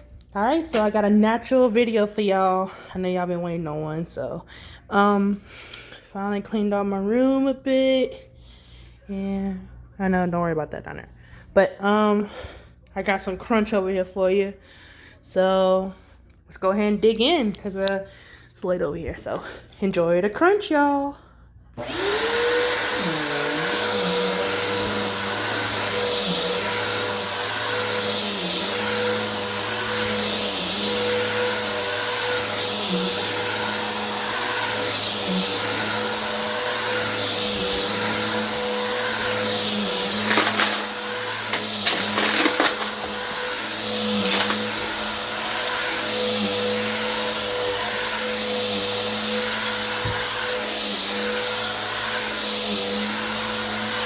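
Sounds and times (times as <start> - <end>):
vacuum cleaner motor whining: 21.8 - 54.0.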